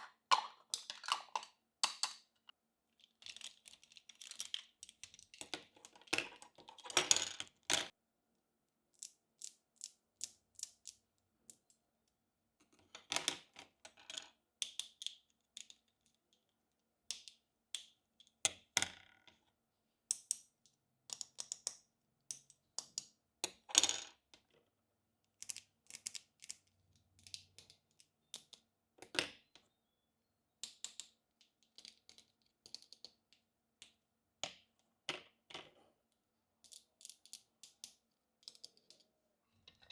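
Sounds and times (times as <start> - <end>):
plastic toy pieces clicking: 30.6 - 33.2, 36.6 - 39.0.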